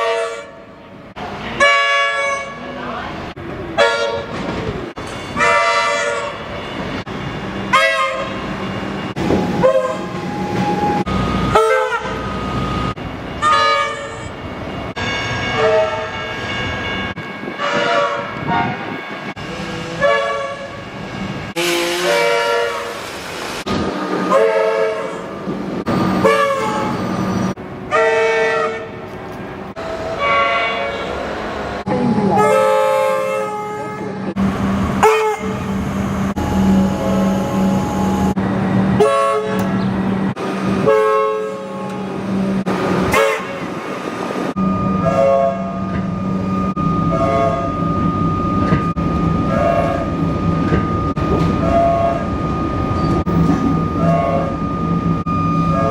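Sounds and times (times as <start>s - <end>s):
train horn blasts: 0.0s - 0.7s, 1.6s - 2.7s, 3.8s - 4.3s, 5.4s - 6.5s, 7.7s - 8.4s, 9.4s - 12.2s, 13.4s - 14.3s, 15.0s - 16.5s, 17.6s - 18.8s, 19.8s - 20.8s, 21.6s - 23.0s, 24.2s - 25.3s, 26.2s - 27.0s, 27.9s - 29.0s, 29.8s - 31.2s, 32.0s - 34.2s, 35.0s - 35.7s, 39.0s - 39.8s, 40.8s - 42.0s, 43.1s - 43.7s, 45.0s - 46.0s, 47.1s - 47.8s, 49.5s - 50.1s, 51.6s - 52.3s, 54.0s - 54.6s.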